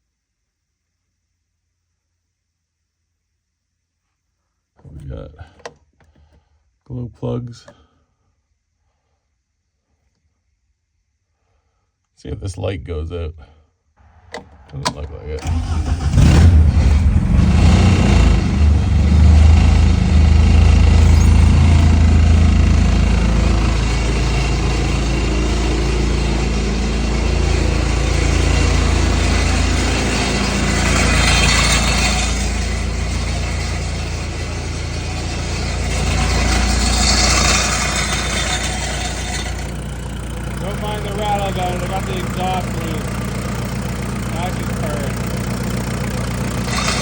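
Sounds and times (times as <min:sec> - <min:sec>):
exhaust rattle: 0:14.4 - 0:47.0
diesel engine idling: 0:15.4 - 0:47.0.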